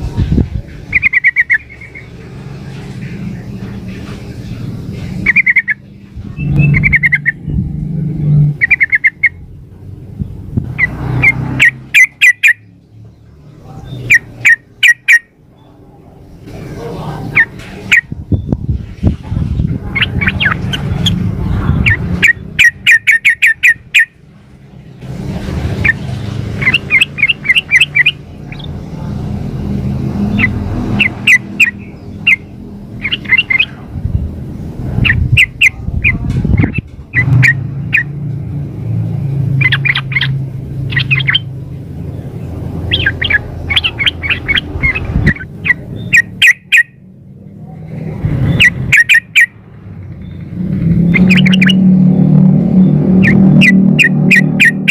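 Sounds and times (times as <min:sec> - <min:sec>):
bird chattering chirps: 0:00.8 - 0:02.2, 0:05.0 - 0:07.6, 0:08.6 - 0:09.4, 0:10.7 - 0:12.8, 0:13.8 - 0:15.8, 0:17.0 - 0:18.6, 0:19.9 - 0:21.2, 0:21.8 - 0:24.2, 0:25.8 - 0:29.0, 0:30.2 - 0:33.9, 0:35.0 - 0:38.2, 0:39.5 - 0:47.0, 0:48.4 - 0:51.8, 0:53.2 - 0:54.9
steady low rumble: 0:26.5 - 0:46.1.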